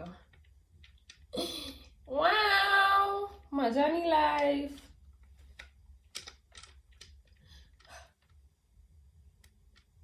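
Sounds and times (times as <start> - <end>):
low steady hum: 0.0 - 10.0
clicks and taps of objects: 0.2 - 1.3, 4.3 - 8.4.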